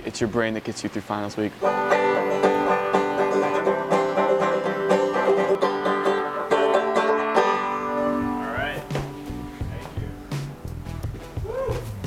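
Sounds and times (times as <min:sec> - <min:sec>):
banjo picking: 0:01.6 - 0:11.1.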